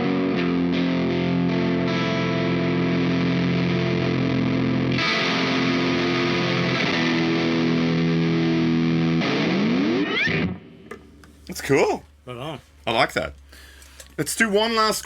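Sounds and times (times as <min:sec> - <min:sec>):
distorted electric guitar chords: 0:00.0 - 0:10.9.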